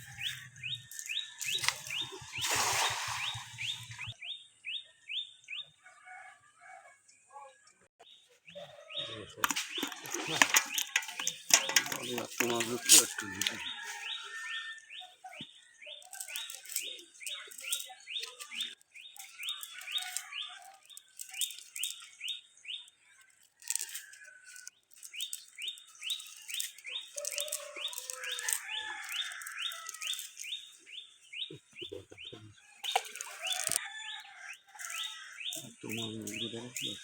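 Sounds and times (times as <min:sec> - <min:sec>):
small birds chirping: 0:00.0 - 0:05.8, 0:07.3 - 0:37.0.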